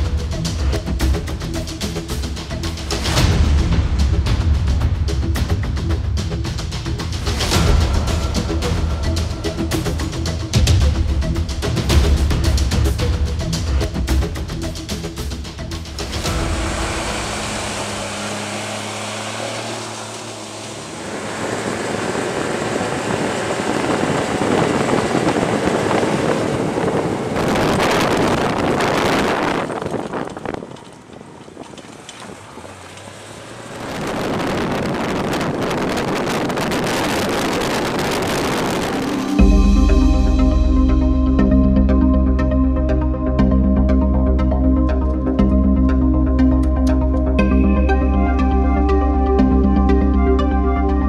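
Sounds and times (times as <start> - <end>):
loud rushing engine noise: 15.8 - 42.4
wind buffeting microphone: 16.2 - 32.8, 33.5 - 39.6.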